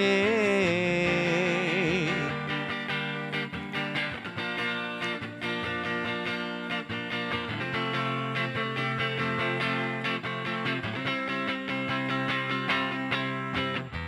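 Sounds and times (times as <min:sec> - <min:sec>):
person singing with vibrato: 0:00.0 - 0:03.7
guitar strumming: 0:00.0 - 0:14.0.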